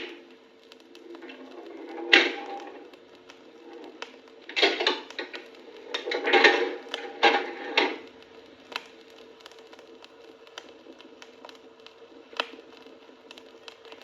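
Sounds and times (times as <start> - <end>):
machine clunking and rattling: 4.5 - 5.4.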